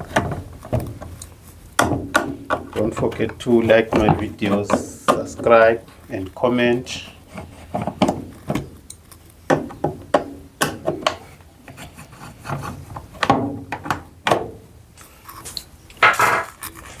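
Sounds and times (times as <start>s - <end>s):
hands scraping plastic cover: 0.0s - 9.3s.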